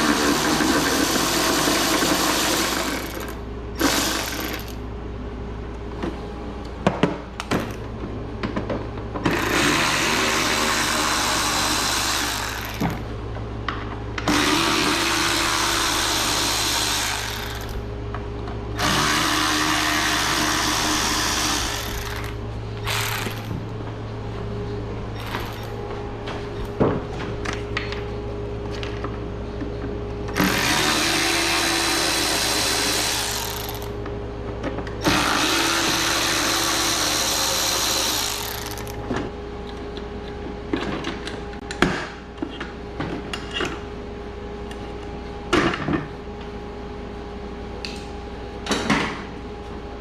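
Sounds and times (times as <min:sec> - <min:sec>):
power drill running: 0:00.0 - 0:04.8, 0:09.3 - 0:13.0, 0:14.3 - 0:17.8, 0:18.8 - 0:23.5, 0:25.2 - 0:25.7, 0:30.3 - 0:34.0, 0:35.0 - 0:39.0.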